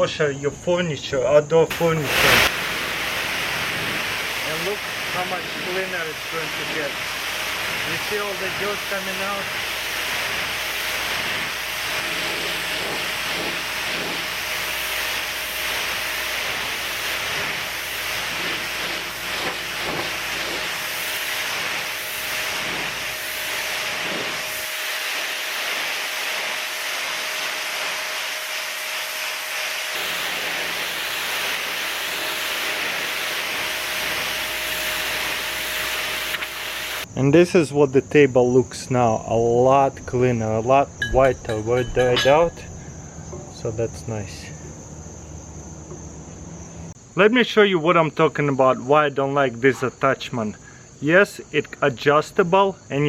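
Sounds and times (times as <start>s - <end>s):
pressure washer spray hissing: 1.7s - 37.1s
thin steady tone: 41.0s - 44.5s.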